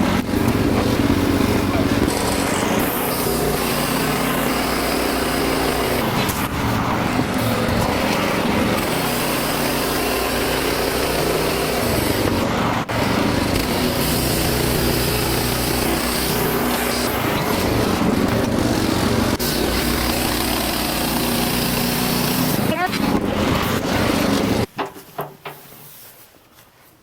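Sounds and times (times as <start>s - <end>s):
sawmill engine running under load: 0.0s - 24.7s.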